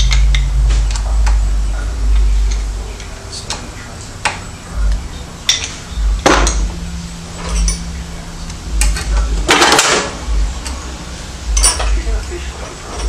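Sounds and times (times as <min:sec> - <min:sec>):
tools rattling: 0:05.4 - 0:08.0, 0:08.7 - 0:10.9, 0:11.5 - 0:13.0
metal hand tools clinking: 0:07.4 - 0:08.0, 0:11.5 - 0:13.0.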